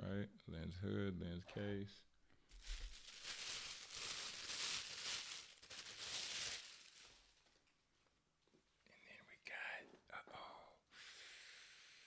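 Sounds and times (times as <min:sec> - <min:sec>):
packaging rustling and crinkling: 0:02.5 - 0:07.6.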